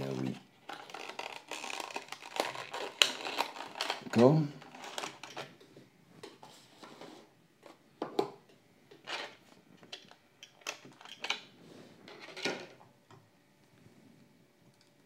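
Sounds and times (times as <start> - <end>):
plastic packaging handled: 0.0 - 5.6.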